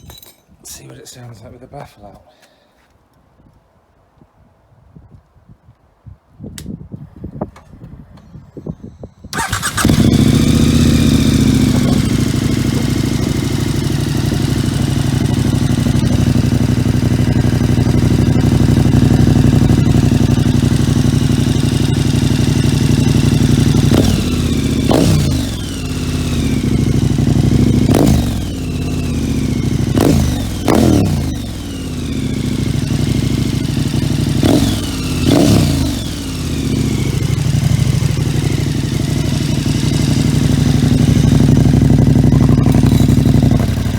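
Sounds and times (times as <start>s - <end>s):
motorcycle engine starting and revving: 9.3s - 43.9s.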